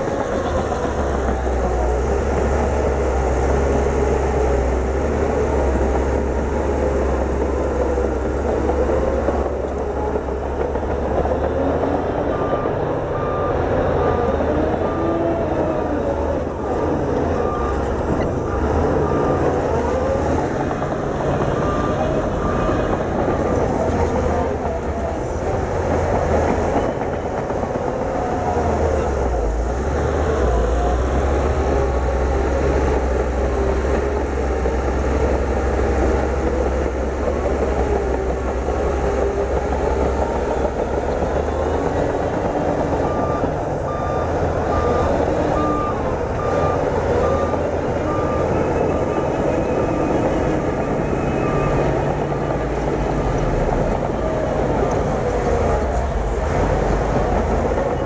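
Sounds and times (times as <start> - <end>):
bulldozer diesel engine under load: 0.0 - 58.0
bulldozer tracks clanking: 0.0 - 58.0
reversing alarm beeping: 11.5 - 25.2, 38.8 - 56.4.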